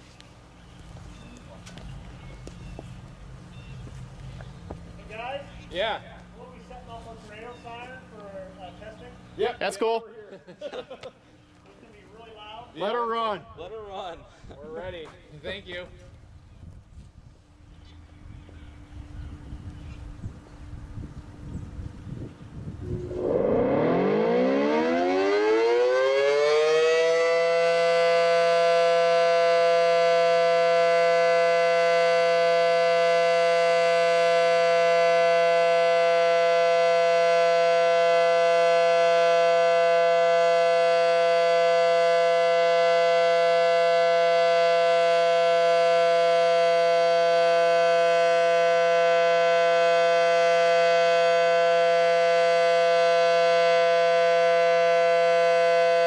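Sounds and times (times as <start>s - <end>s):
outdoor warning siren: 22.6s - 56.0s.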